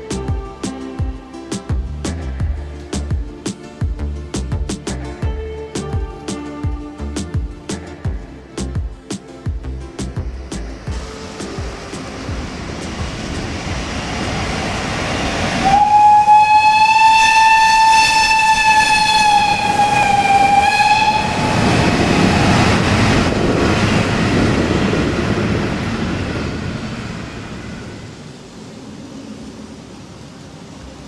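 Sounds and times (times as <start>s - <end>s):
train rumbling: 0.0s - 31.0s
train horn: 15.6s - 22.6s.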